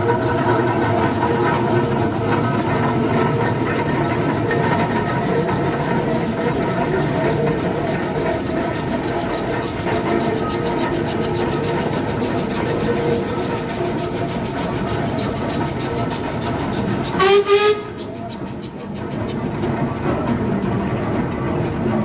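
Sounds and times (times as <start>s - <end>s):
steam engine running: 0.0s - 22.0s
steam whistle blast: 17.1s - 18.1s.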